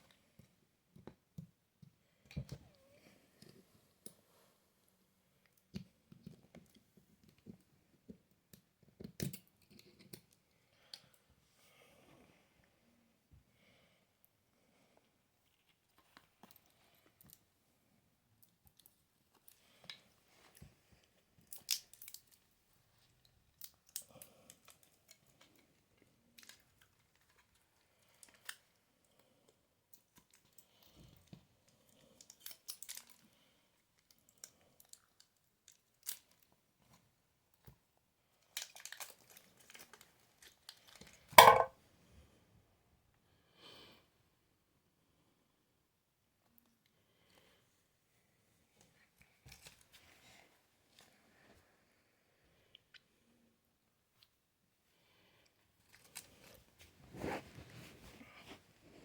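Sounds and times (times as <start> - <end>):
plastic clicks and rustles: 38.5 - 41.7.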